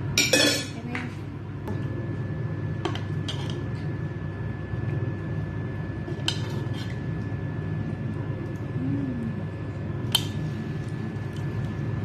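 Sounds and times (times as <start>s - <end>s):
low hum: 0.0s - 12.0s
utensils clinking on dishes: 0.2s - 0.8s.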